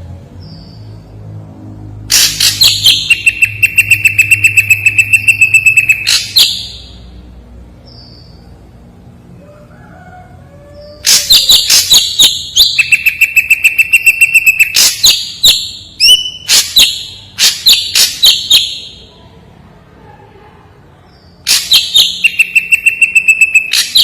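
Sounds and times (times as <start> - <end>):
bird singing: 2.3 - 7.2, 7.8 - 8.7, 10.8 - 19.3, 21.0 - 24.0.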